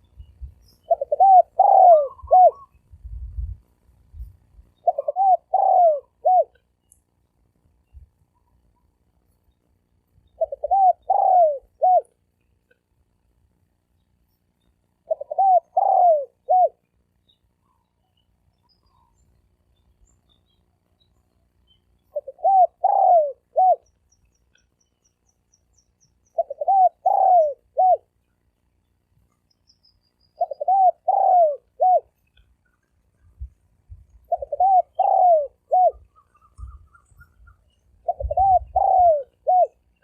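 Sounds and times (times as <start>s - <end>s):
dove cooing: 0.8s - 2.8s, 4.8s - 6.6s, 10.4s - 12.2s, 15.0s - 16.8s, 22.1s - 24.0s, 26.2s - 28.1s, 30.4s - 32.2s, 33.4s - 40.0s.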